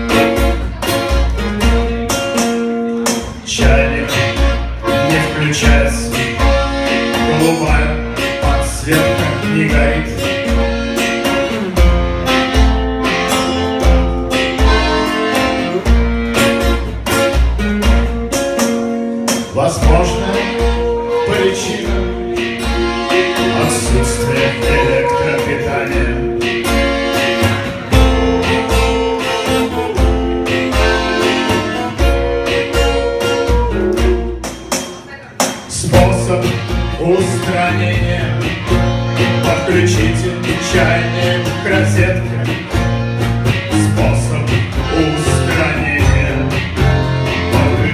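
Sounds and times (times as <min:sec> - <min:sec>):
bass line with steady beat: 0:00.0 - 0:21.1, 0:21.8 - 0:34.5, 0:35.8 - 0:47.9
guitar strumming: 0:00.0 - 0:47.9
steady bass beat: 0:35.9 - 0:47.9.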